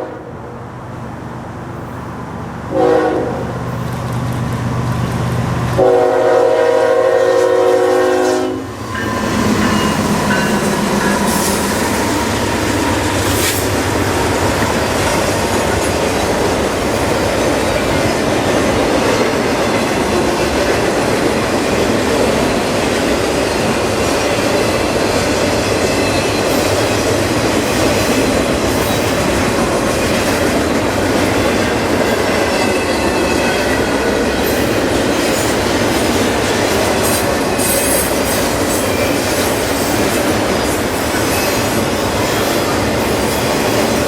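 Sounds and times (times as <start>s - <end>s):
train wheels rumbling on rails: 0.0s - 44.0s
high wheel squeals: 8.7s - 13.7s, 23.6s - 27.1s, 32.4s - 34.8s, 37.0s - 40.0s.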